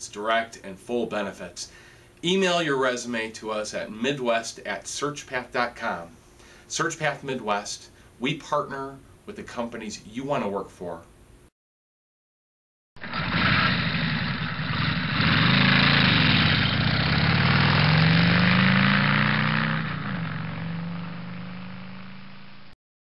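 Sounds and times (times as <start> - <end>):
vehicle engine revving: 13.0 - 22.7.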